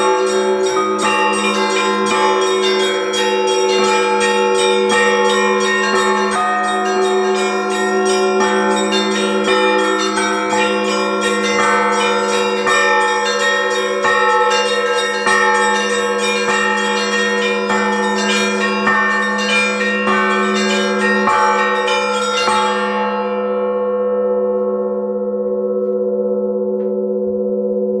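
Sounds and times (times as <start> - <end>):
church bells pealing: 0.0 - 28.0
deep sustained bell tone: 0.0 - 28.0.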